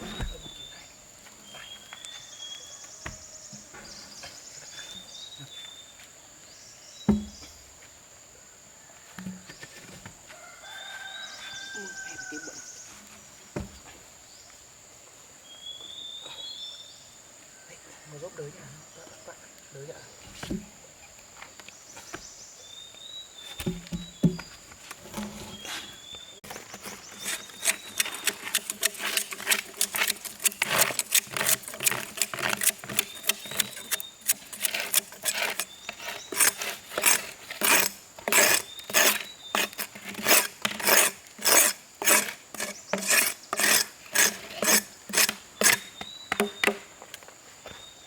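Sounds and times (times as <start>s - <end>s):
hand tool rasping on wood: 26.9s - 45.9s.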